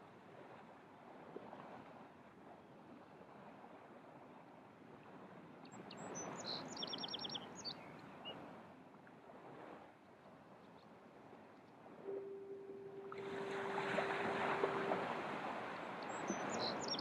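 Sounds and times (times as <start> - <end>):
bird singing: 5.9 - 8.1, 12.1 - 17.0
surf washing on beach: 12.0 - 17.0.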